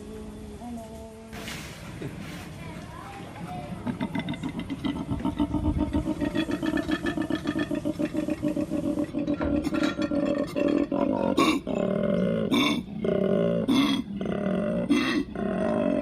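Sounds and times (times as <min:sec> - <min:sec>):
animal roaring call: 0:03.8 - 0:16.0.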